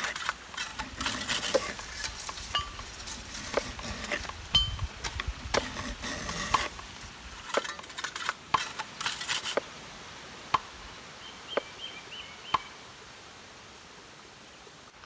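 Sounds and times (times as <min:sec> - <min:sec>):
small bird chirping: 0:11.2 - 0:12.8.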